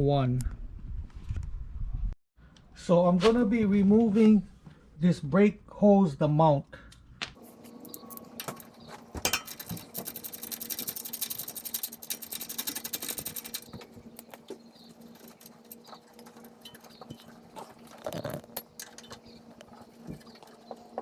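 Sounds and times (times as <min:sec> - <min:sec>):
steady low hum: 0:07.4 - 0:21.0
socket ratchet clicking: 0:07.7 - 0:16.4.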